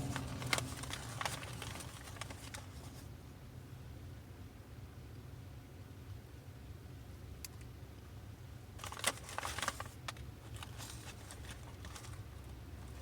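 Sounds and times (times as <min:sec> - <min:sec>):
paper packaging crinkling: 0:00.0 - 0:03.0, 0:08.8 - 0:13.0
low steady hum: 0:00.0 - 0:13.0.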